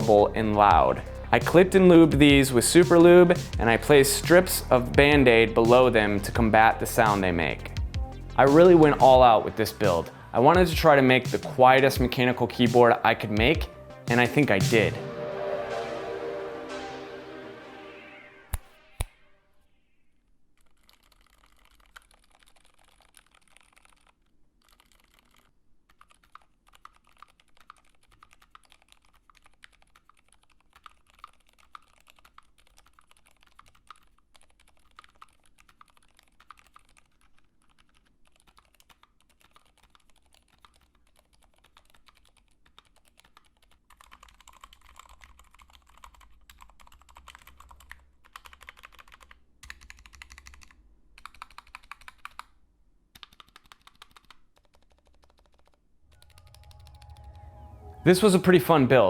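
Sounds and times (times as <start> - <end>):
quiet keyboard typing: 20.5 - 57.6.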